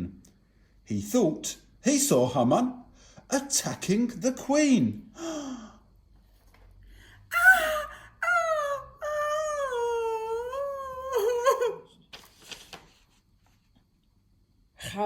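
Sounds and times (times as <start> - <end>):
wordless wailing voice: 7.3 - 11.8.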